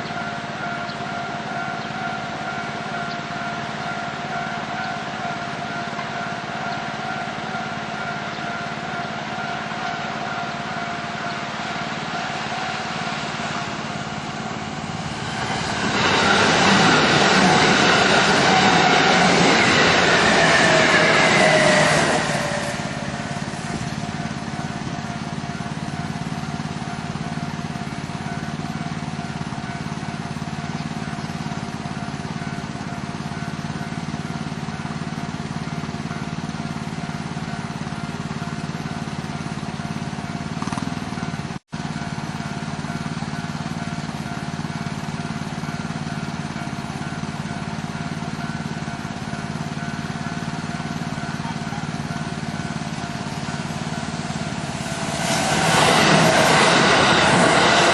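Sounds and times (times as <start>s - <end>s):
electric train motor whine: 0.0s - 57.9s
level crossing warning bell: 0.0s - 57.9s.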